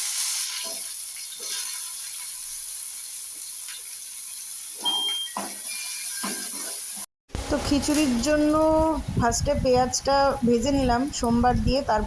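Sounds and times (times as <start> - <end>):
potatoes sizzling in oil: 0.0 - 8.7.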